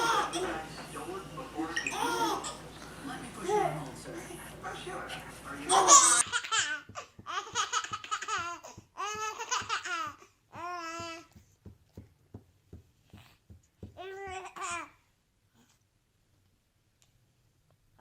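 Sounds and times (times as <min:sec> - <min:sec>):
baby laughing and babbling: 0:00.0 - 0:00.5, 0:01.9 - 0:02.6, 0:05.7 - 0:11.3.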